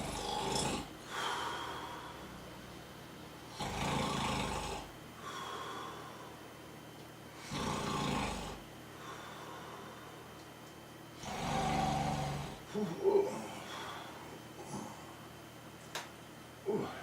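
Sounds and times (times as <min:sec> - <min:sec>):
person snoring: 0:00.0 - 0:02.4, 0:03.5 - 0:06.0, 0:07.4 - 0:08.6, 0:11.2 - 0:14.0, 0:16.7 - 0:17.0.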